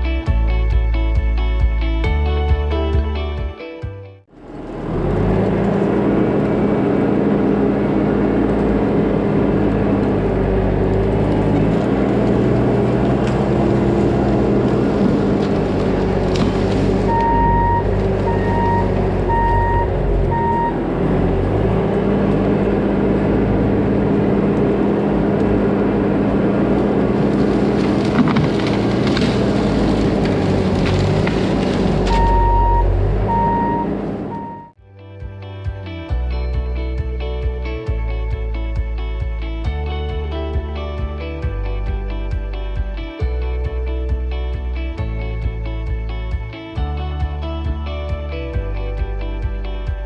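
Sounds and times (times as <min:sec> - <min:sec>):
diesel engine running: 0:04.2 - 0:34.8, 0:35.7 - 0:50.0
reverse backup alarm beeps: 0:17.1 - 0:20.8, 0:32.2 - 0:34.8.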